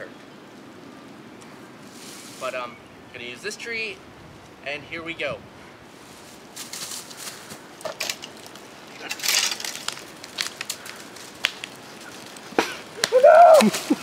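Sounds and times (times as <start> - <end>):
crunching rustle: 1.4 - 2.7, 5.8 - 14.0
wood and brush snapping: 6.6 - 14.0.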